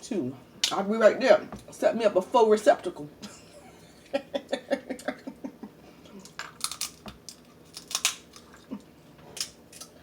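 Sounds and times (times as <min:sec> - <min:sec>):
crab shells clicking and tapping: 0:06.4 - 0:08.5.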